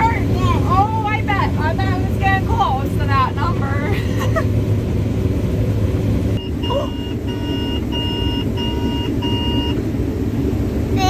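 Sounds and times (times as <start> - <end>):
combine harvester engine droning: 0.0 - 11.0
electronic warning beeps: 6.4 - 9.8.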